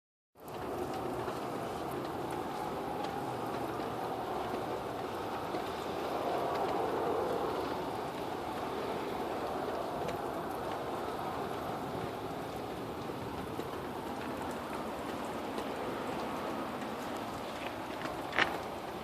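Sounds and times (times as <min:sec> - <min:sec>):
steady roaring from the sky: 0:00.4 - 0:19.0.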